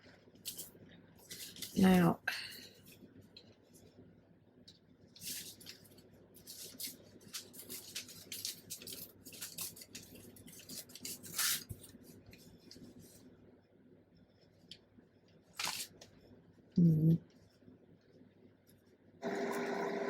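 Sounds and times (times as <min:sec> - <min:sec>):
paper crinkle: 0:00.4 - 0:02.1, 0:05.1 - 0:13.2, 0:15.5 - 0:16.2
old paper rustling: 0:00.4 - 0:03.0, 0:05.1 - 0:13.2, 0:15.5 - 0:16.2.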